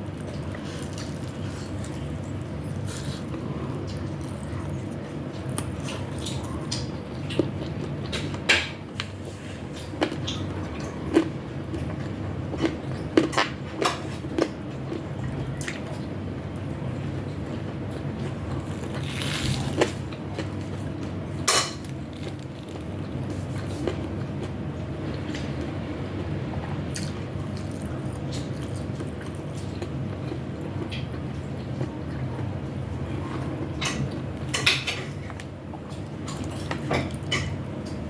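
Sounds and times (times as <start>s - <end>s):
chewing: 0.0s - 8.4s, 17.2s - 24.6s, 26.9s - 32.5s, 33.2s - 38.0s
steady low hum: 0.0s - 38.0s.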